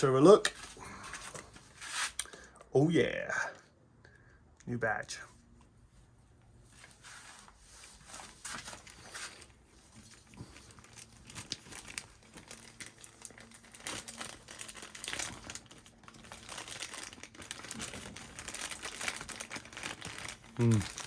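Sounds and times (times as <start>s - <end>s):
wrapping crinkling and rustling: 6.7s - 21.0s.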